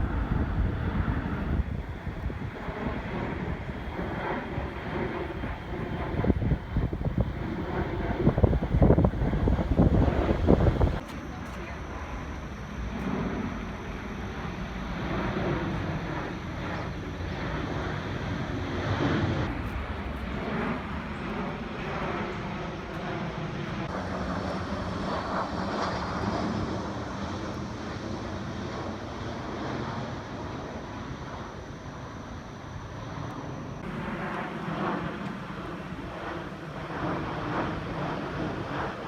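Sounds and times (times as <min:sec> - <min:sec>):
airplane engine rumble: 0:00.0 - 0:39.0
faint high gliding whine: 0:00.0 - 0:39.0.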